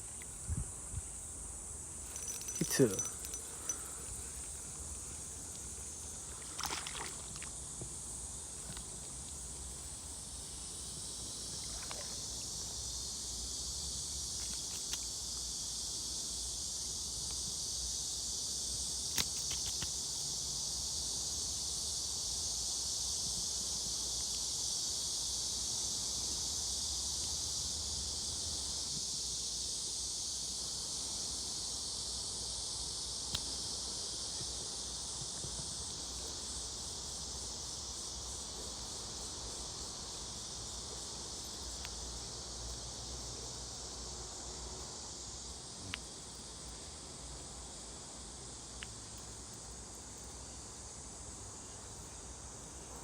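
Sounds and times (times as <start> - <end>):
insects chorus: 0.0 - 53.0.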